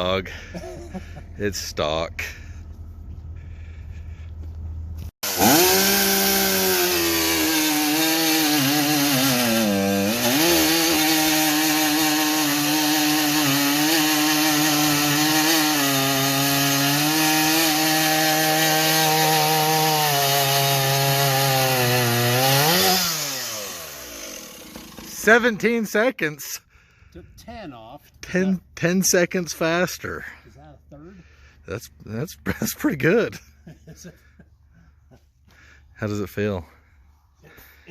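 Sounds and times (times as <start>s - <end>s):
chainsaw cutting log: 5.2s - 25.8s.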